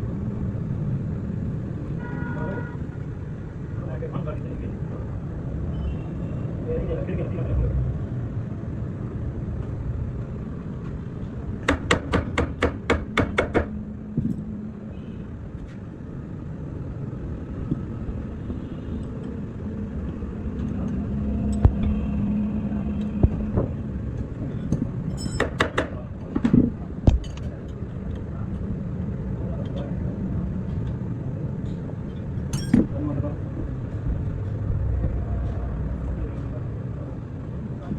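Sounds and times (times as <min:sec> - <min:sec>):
low workshop rumble: 0:09.4 - 0:37.9.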